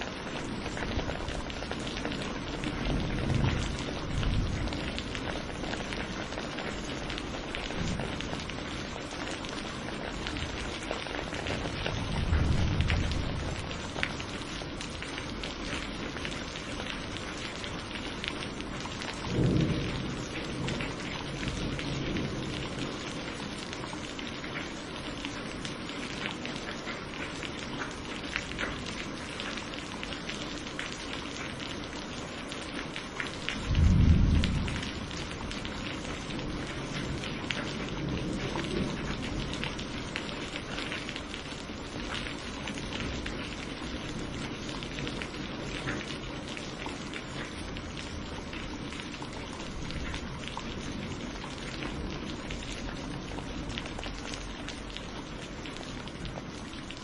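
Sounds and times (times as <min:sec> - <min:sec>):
heavy rain pattering: 0:00.0 - 0:57.0
low rolls of thunder: 0:00.1 - 0:08.7, 0:10.0 - 0:14.3, 0:18.8 - 0:23.9, 0:33.5 - 0:40.0.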